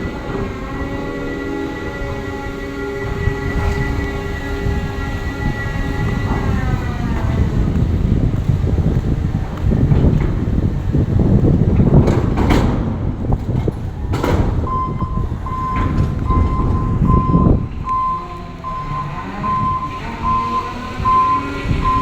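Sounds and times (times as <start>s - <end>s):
loud low rumble: 0.0s - 22.0s
reversing alarm beeps: 14.7s - 22.0s.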